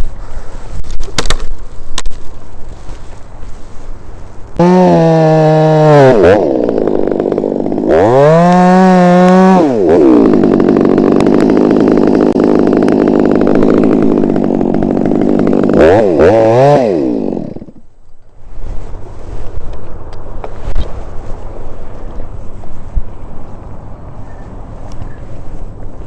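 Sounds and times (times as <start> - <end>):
chainsaw revving and cutting wood: 4.6 - 17.9.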